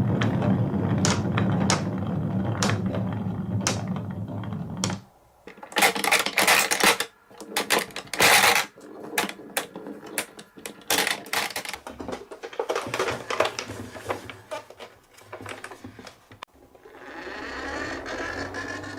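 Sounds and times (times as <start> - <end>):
marbles rolling and clacking: 0.0 - 14.5.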